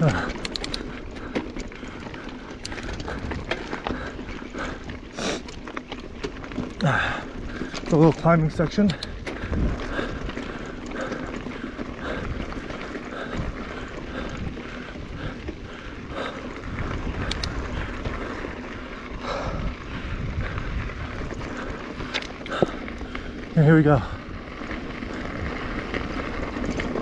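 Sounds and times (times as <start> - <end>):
bike knocking over rocks: 0.0 - 18.6
bike tyres crunching on dirt: 0.0 - 27.0
wind on microphone: 9.4 - 10.3, 19.2 - 22.1.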